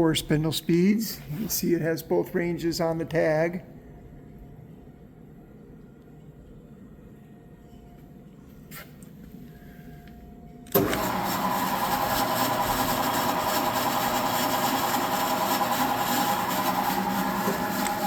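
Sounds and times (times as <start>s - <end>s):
milling machine spindle whirring: 10.7s - 18.0s.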